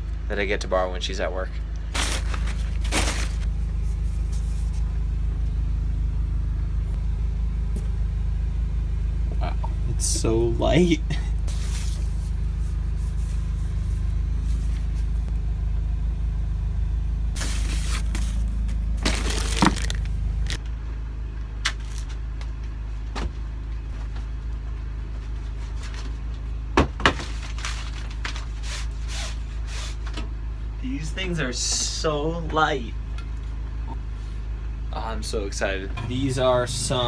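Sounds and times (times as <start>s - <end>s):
steady low hum: 0.0s - 37.0s
packaging rustling: 1.9s - 4.8s, 17.4s - 20.6s, 21.7s - 22.2s.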